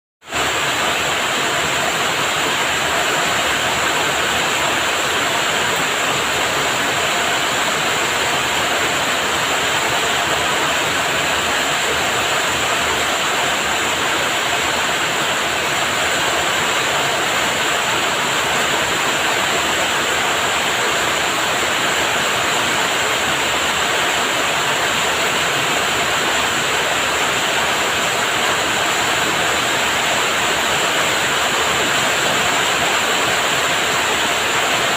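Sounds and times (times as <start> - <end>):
heavy rain pouring: 0.2 - 34.9.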